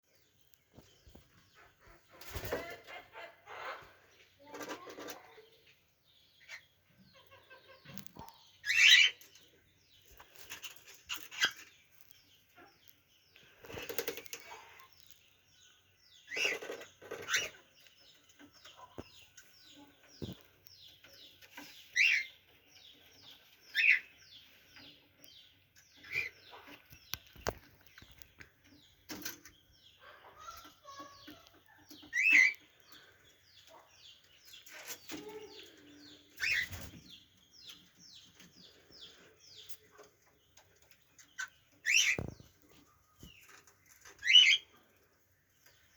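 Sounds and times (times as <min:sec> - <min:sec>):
cockatiels chirping and calling: 0:06.4 - 0:09.5, 0:10.2 - 0:11.7, 0:16.2 - 0:17.7, 0:21.9 - 0:22.4, 0:23.7 - 0:24.1, 0:29.1 - 0:33.9, 0:34.6 - 0:37.8, 0:41.2 - 0:44.8.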